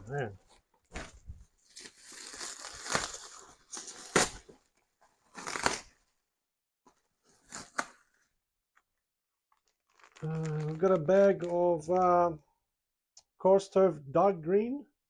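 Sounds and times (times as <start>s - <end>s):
plastic packaging crinkling: 1.6s - 4.5s, 9.5s - 11.9s.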